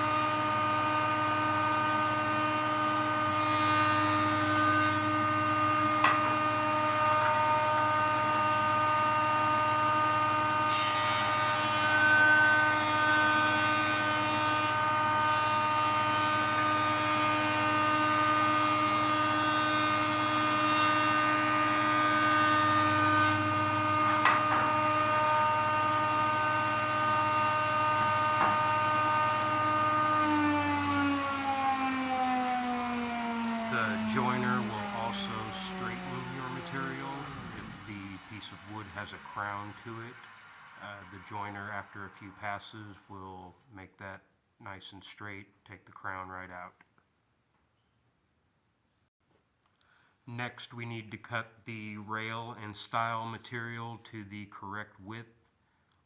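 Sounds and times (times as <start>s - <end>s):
hiss of wood cutting: 0.0s - 0.6s, 10.6s - 43.4s
jointer motor whine: 0.0s - 42.5s
sharp knocks: 24.1s - 24.8s, 28.0s - 28.7s.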